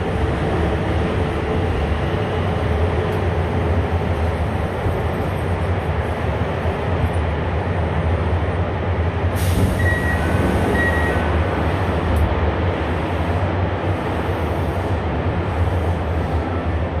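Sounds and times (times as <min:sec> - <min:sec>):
electric train rumbling on track: 0:00.0 - 0:17.0
burst of hiss: 0:09.4 - 0:09.8.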